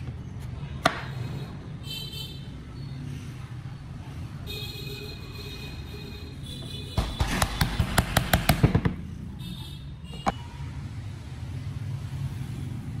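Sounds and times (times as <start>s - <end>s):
sharp knocks on wood: 7.0s - 9.0s.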